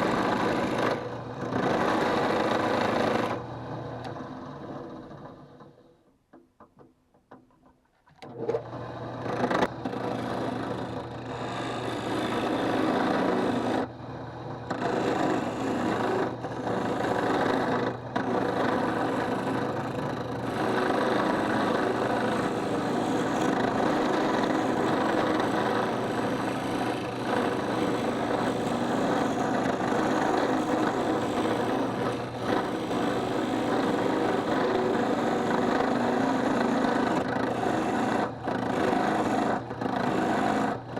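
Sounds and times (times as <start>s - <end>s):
tool scraping spinning wood: 0.0s - 5.3s, 8.2s - 40.9s
drill press motor humming: 0.0s - 5.7s, 8.2s - 40.9s.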